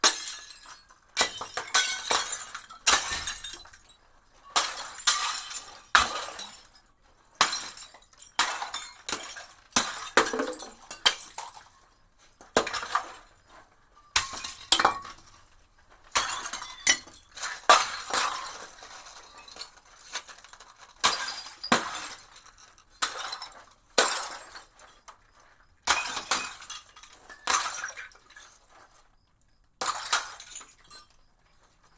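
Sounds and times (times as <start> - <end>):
glass bottles smashing: 0.0 - 11.9, 14.2 - 15.4, 16.1 - 24.7, 25.9 - 28.6, 29.8 - 31.2
glass shards tinkling: 29.9 - 31.2.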